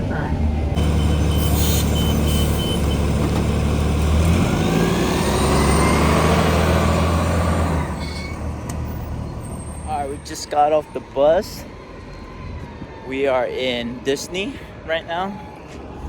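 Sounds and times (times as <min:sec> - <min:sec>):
engine whine: 0:00.0 - 0:09.4
bus engine rumbling: 0:00.0 - 0:13.1.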